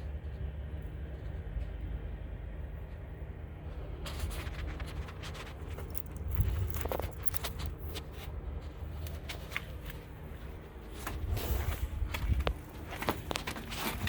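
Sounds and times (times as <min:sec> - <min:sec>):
steady low hum: 0:00.0 - 0:14.0
rustling handling noise: 0:03.7 - 0:14.0
clicks and scuffs: 0:03.8 - 0:14.0.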